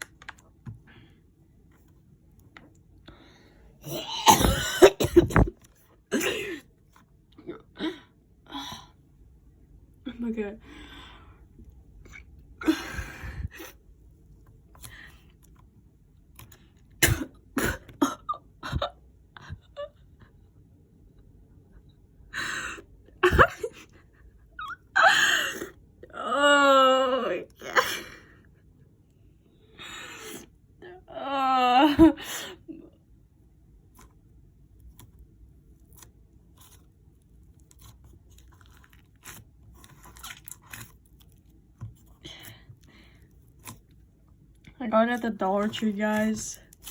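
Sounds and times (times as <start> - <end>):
slime squelching by hand: 33.8 - 46.9.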